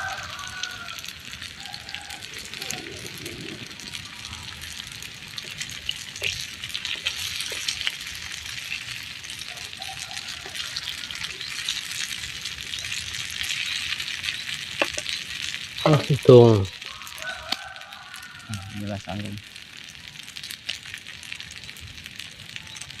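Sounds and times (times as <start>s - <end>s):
oil pops and crackles: 0.0s - 18.5s, 19.1s - 23.0s
food frying in hot oil: 0.0s - 23.0s.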